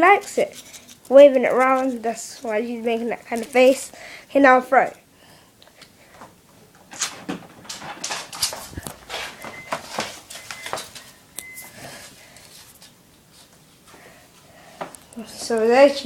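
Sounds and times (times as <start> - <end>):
cat scuffling and pouncing: 6.9 - 13.8.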